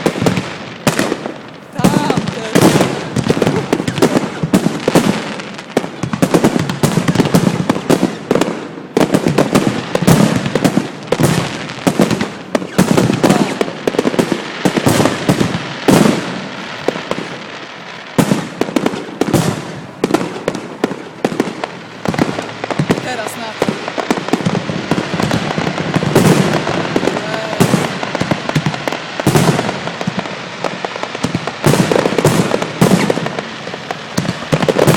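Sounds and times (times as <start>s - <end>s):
fireworks bangs and crackling: 0.0s - 34.9s.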